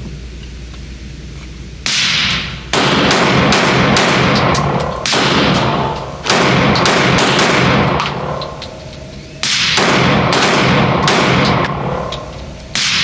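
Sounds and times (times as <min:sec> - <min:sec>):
pistol shots echoing: 0:01.9 - 0:08.6, 0:09.4 - 0:13.0.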